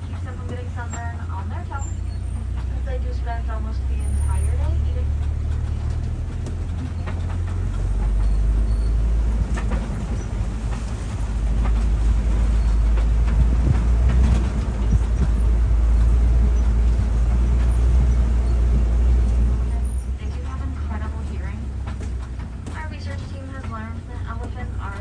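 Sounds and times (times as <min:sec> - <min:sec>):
truck engine rumbling: 0:00.0 - 0:25.0
vehicle knocks and rattles: 0:00.0 - 0:25.0.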